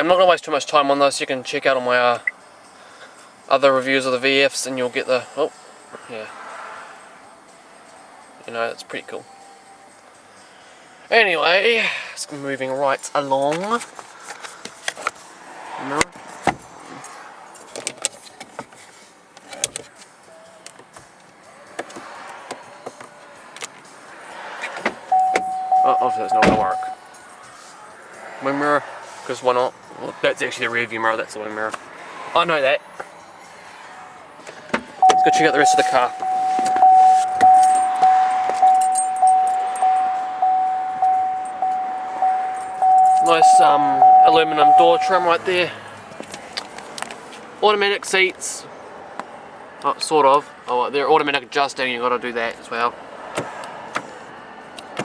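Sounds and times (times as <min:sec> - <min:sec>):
car warning chime dinging: 0:01.2 - 0:02.5, 0:07.0 - 0:11.8, 0:25.0 - 0:27.4, 0:34.8 - 0:45.7
clicks and knocks of car switches: 0:53.3 - 0:54.2, 0:54.8 - 0:55.0.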